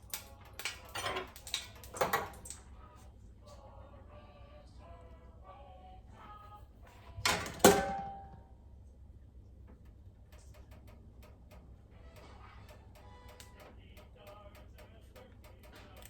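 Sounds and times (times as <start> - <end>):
cookware clanking: 7.3 - 8.4.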